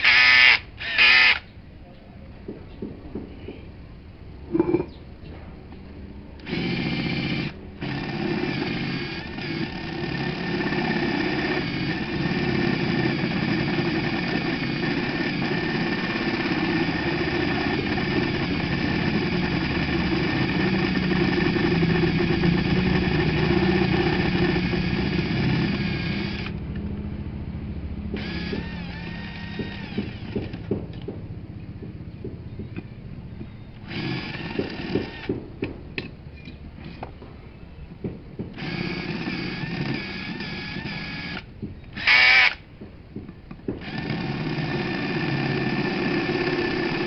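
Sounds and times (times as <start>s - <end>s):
electric motor running: 0.0s - 1.4s, 6.4s - 26.9s, 27.6s - 35.4s, 38.6s - 42.6s, 43.8s - 47.0s.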